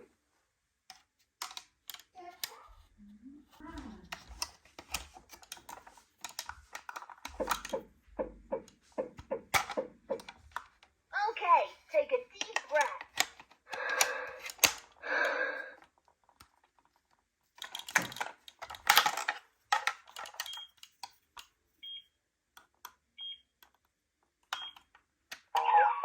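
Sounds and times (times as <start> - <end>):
plastic toys clicking and rattling: 0.9 - 2.9, 3.5 - 7.8, 9.5 - 10.9, 11.8 - 15.0, 15.6 - 21.5.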